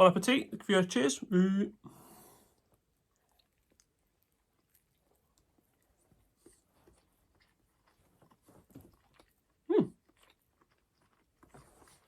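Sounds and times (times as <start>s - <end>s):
person chewing: 2.5s - 12.0s.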